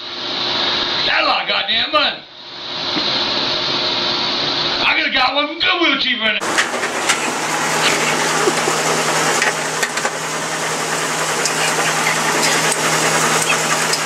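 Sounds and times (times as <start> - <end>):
washing machine running: 6.4 - 14.0.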